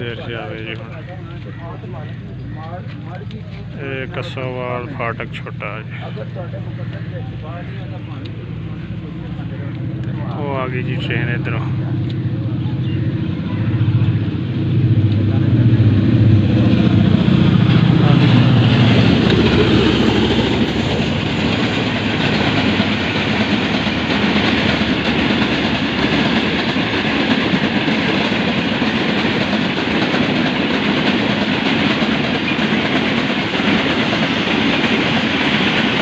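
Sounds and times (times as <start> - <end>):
locomotive low drone: 0.0 - 36.0
train wheels clattering over rail joints: 17.7 - 36.0.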